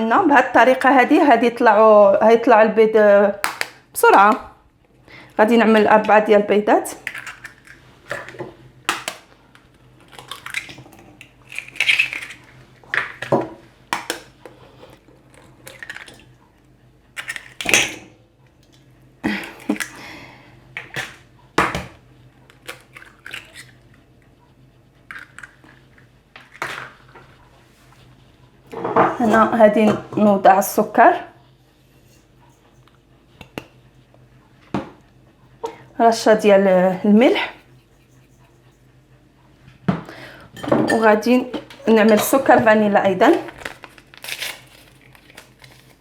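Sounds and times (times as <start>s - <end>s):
eggshells crunching: 8.9s - 13.3s, 22.5s - 23.9s.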